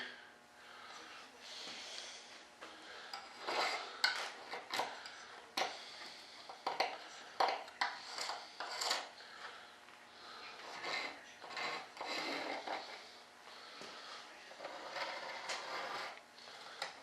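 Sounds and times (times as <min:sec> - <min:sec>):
tool rubbing on hard part: 0:03.0 - 0:09.6, 0:10.2 - 0:17.0.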